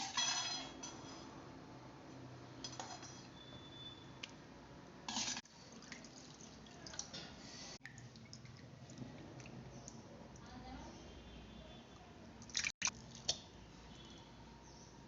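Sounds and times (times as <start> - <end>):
water splashing and dripping: 7.8 - 10.4, 12.4 - 13.5.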